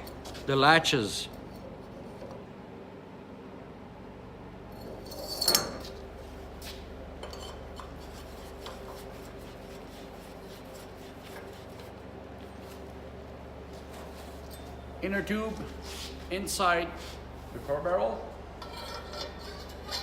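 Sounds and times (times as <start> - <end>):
steady low hum: 0.0 - 20.0
metal clank and scrape: 4.8 - 6.0, 18.6 - 20.0.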